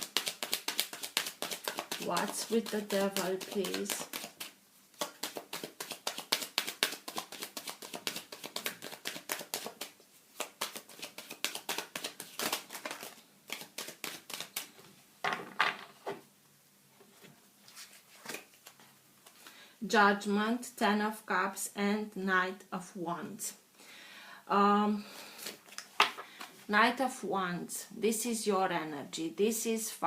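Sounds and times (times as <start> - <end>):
cards being shuffled: 0.0 - 14.8, 17.7 - 19.4.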